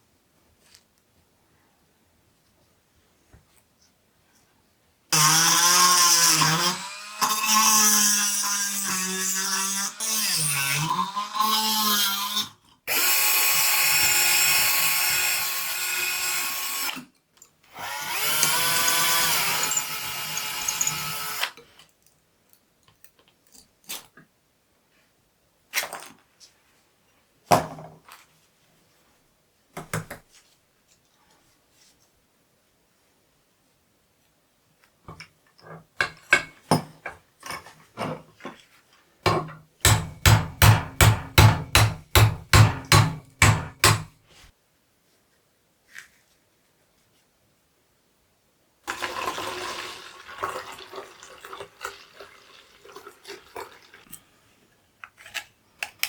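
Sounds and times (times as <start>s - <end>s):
rotary tool motor whine: 17.8s - 21.6s.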